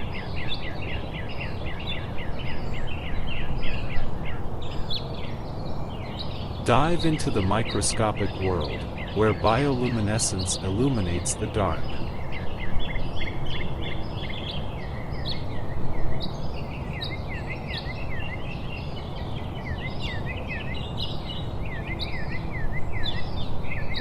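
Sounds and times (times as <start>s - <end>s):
small birds chirping: 0.0s - 24.0s
low background hiss: 2.5s - 13.2s.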